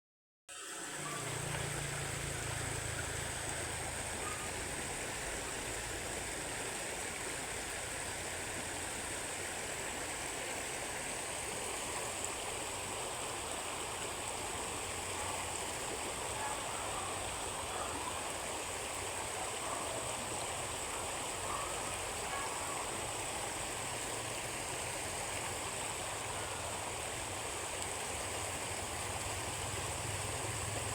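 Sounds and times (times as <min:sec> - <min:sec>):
flowing water rushing: 0:00.5 - 0:30.9
thin high tone: 0:00.8 - 0:03.0.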